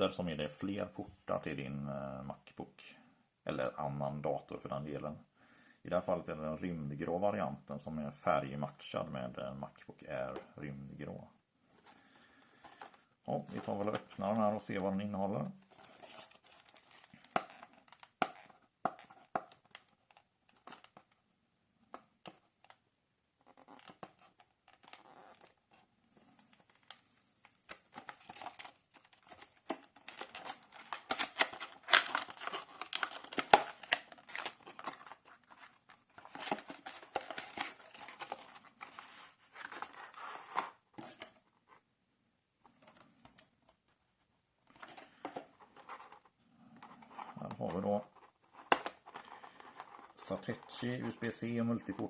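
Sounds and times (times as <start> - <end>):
packaging rustling: 15.6 - 21.2, 23.4 - 41.6, 44.7 - 52.0.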